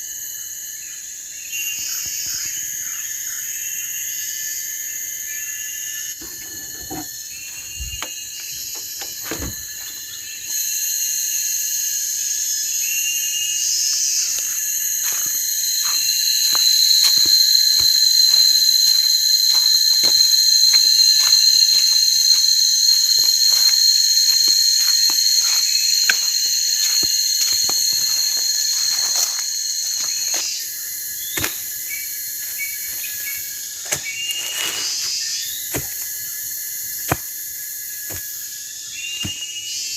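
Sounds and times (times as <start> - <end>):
insects trilling: 0.0 - 39.9
piercing high tone: 14.0 - 30.4.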